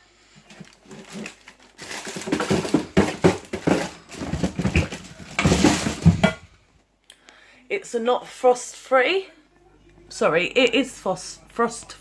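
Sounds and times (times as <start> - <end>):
plastic drawers rattling and scraping: 0.4 - 6.5.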